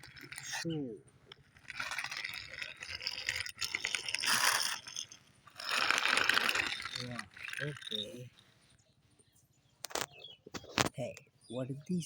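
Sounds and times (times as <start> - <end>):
plastic toy scraping and rattling: 0.0 - 8.5.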